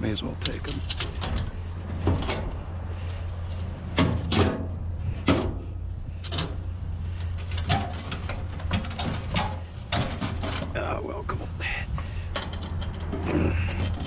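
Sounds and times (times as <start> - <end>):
steady low hum: 0.0 - 14.0
metal knocks and clanks: 0.8 - 2.8, 3.9 - 10.8, 12.3 - 14.0.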